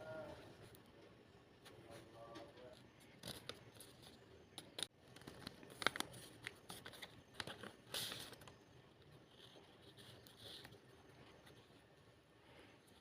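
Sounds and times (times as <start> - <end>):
packaging crinkling: 4.6 - 8.6.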